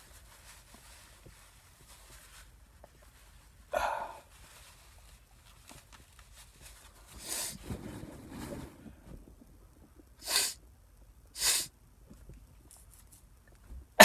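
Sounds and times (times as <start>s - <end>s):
hissing sniff: 7.2s - 7.6s, 10.2s - 10.6s, 11.4s - 11.7s
man sneezing through nose: 10.2s - 10.6s, 11.4s - 11.7s.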